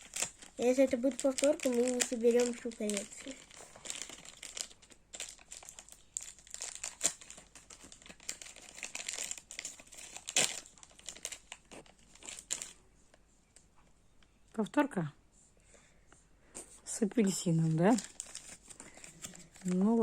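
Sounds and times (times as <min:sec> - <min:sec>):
plastic packaging crinkling: 0:00.0 - 0:12.8, 0:17.3 - 0:20.0.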